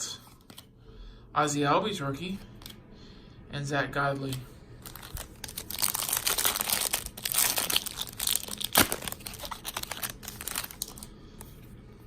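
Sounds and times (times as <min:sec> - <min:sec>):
card pack wrapper crinkling: 0:04.2 - 0:11.1
wrapper ripping: 0:04.8 - 0:11.1.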